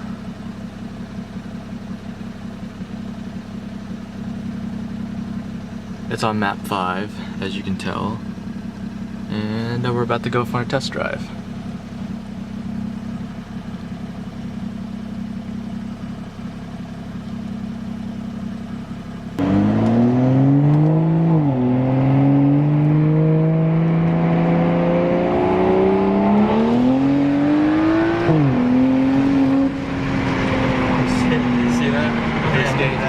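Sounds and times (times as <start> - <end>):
car engine accelerating hard: 18.6 - 33.0.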